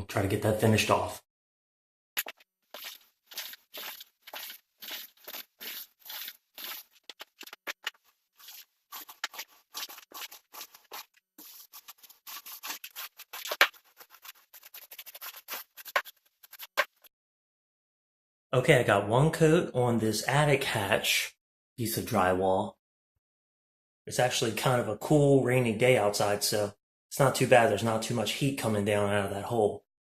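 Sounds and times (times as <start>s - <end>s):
paint spreading over drywall: 2.2s - 17.1s.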